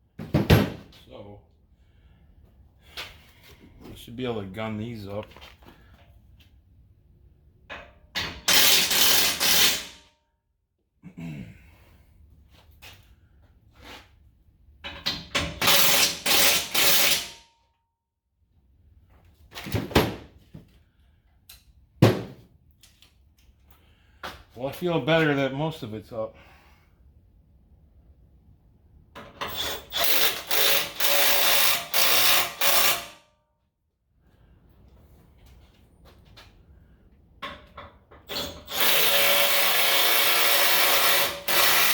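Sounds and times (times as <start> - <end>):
impact wrench burst: 8.4 - 10.0, 15.6 - 17.4, 29.6 - 33.2, 38.4 - 41.9.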